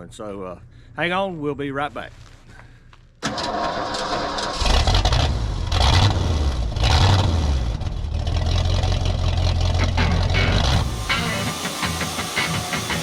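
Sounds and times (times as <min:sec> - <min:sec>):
engine running and revving: 0:04.6 - 0:13.0.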